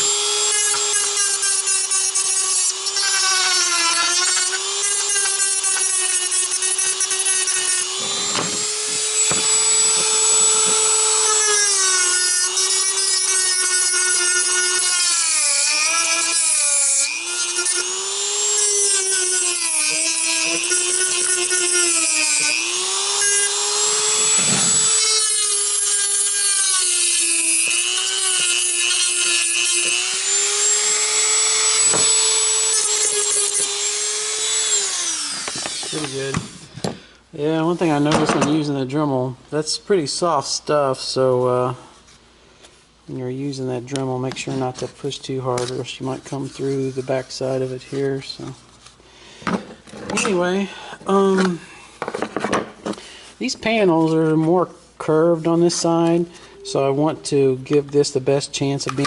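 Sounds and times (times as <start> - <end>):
rotary tool grinding plastic: 0.0 - 36.4.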